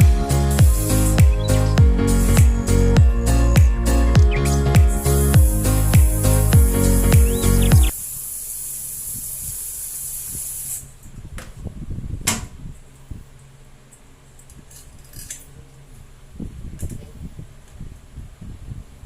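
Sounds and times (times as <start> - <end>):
bidet sprayer spraying water: 0.0 - 10.9.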